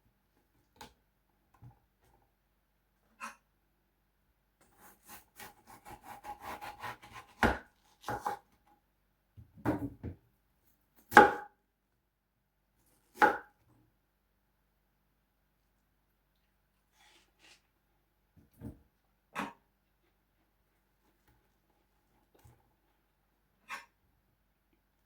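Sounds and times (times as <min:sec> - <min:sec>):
knife chopping watermelon: 0:04.7 - 0:08.5, 0:11.1 - 0:11.5, 0:13.1 - 0:13.5.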